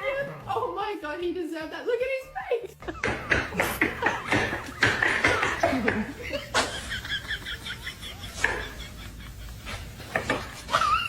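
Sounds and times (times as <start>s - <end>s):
giggling: 2.5s - 11.0s
people laughing: 2.6s - 11.0s.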